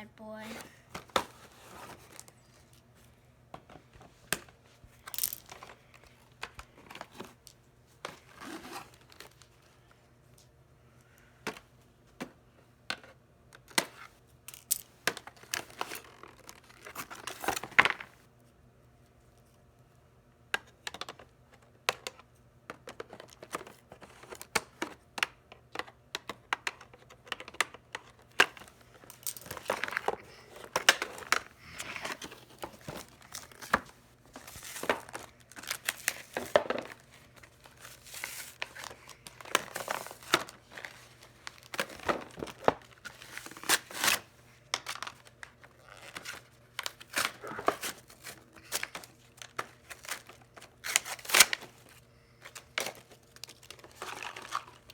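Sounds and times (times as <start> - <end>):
plastic packaging crinkling: 29.0 - 51.9.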